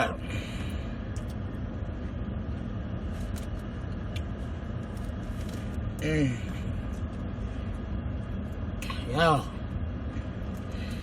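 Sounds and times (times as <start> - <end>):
low rumble of running motor: 0.0 - 11.0
faint clicks and rustles of food: 0.6 - 8.7.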